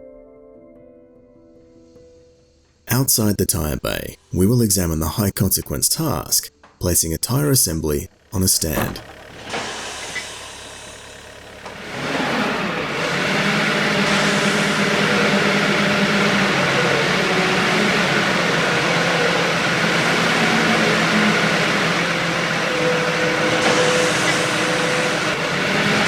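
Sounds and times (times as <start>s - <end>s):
vehicle engine running: 8.1s - 26.0s.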